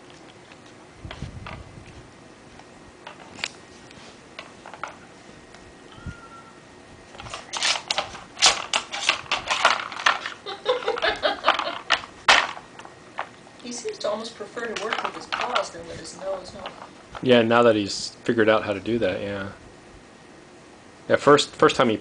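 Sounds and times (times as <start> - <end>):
plastic puzzle clicking and clattering: 7.2 - 10.4.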